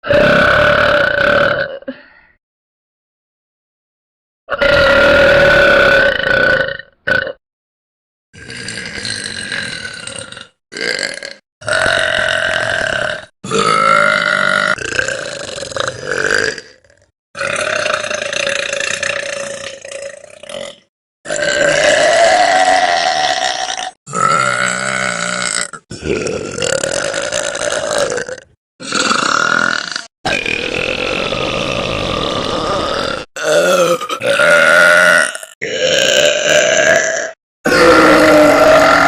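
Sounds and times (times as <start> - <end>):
girls burping: 32.8 - 39.0.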